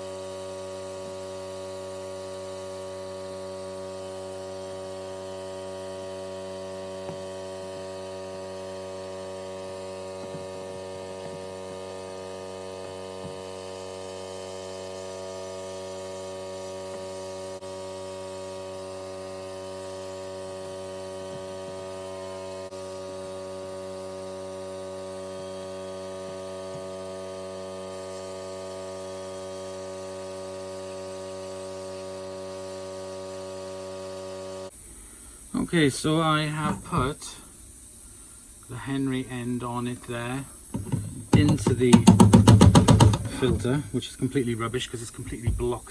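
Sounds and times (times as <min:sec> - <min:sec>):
machine electrical hum: 0:34.4 - 0:45.9.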